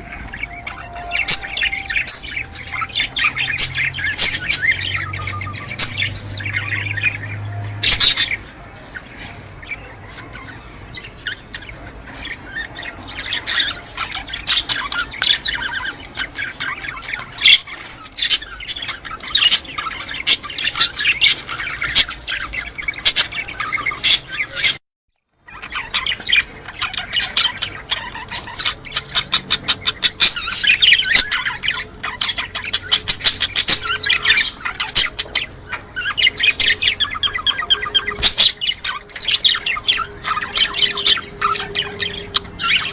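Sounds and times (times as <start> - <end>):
small birds chattering and chirping: 0.0 - 42.9.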